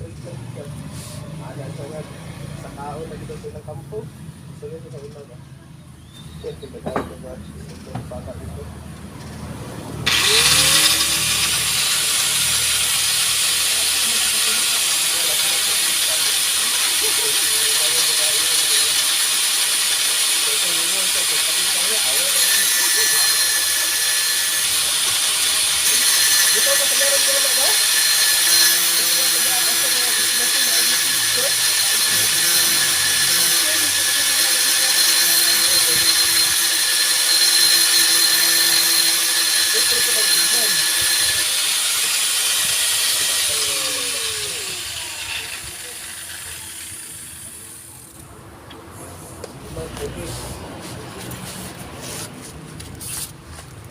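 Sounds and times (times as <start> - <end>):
power tool whining: 9.0 - 48.3
loud high-pitched hiss: 10.1 - 48.0.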